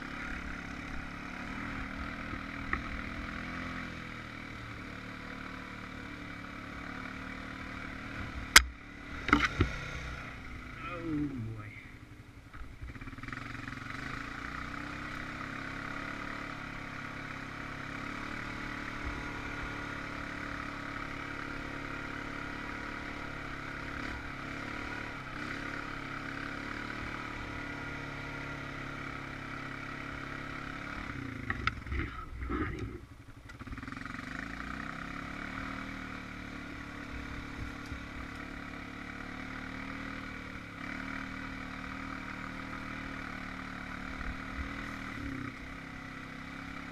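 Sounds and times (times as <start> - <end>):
atv engine running: 0.0 - 46.9
engine knocks and clatter: 30.9 - 34.8.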